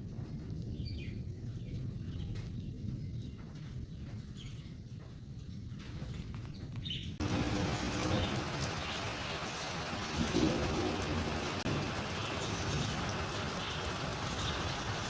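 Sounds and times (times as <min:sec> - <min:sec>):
birds chirping: 0:06.5 - 0:15.0
steady low rumble: 0:07.2 - 0:14.1.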